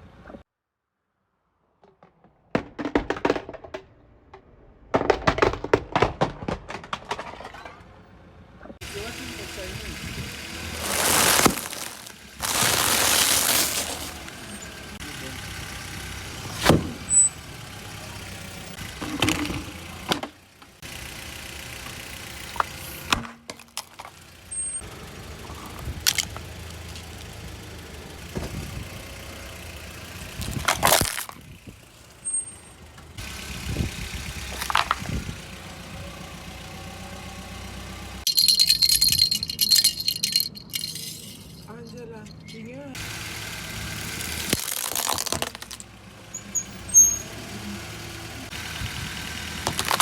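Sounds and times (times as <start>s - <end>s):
vehicle engine running at low revs: 8.6s - 23.2s, 24.0s - 38.2s, 43.0s - 44.5s, 45.6s - 50.0s
items crunching under tyres: 10.5s - 15.0s, 22.4s - 28.9s, 30.2s - 31.8s, 34.2s - 35.4s, 43.9s - 47.2s, 49.3s - 50.0s.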